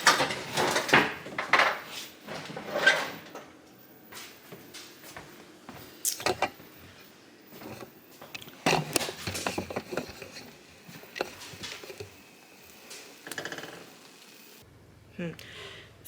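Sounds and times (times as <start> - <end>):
knocks and clicks of handling: 6.2 - 6.6, 7.6 - 12.2.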